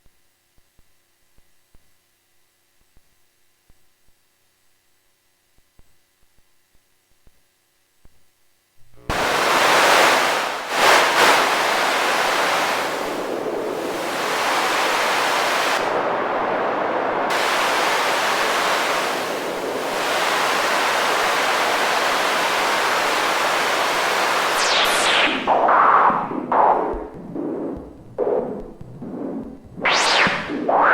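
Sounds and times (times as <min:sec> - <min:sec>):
white noise machine hissing: 0:09.0 - 0:26.7
swooping noise sweeps: 0:09.1 - 0:30.9.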